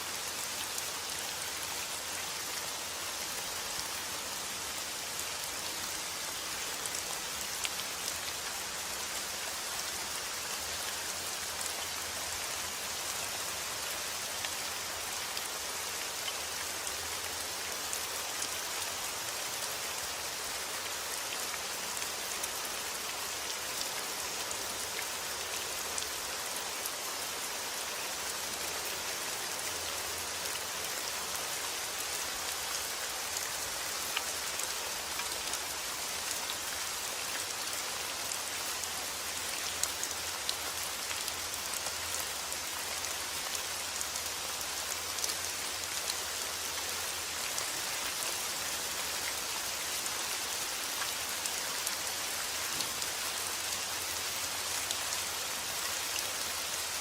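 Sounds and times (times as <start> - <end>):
steady rain hiss: 0.0 - 57.0
raindrops ticking on surface: 52.6 - 53.8.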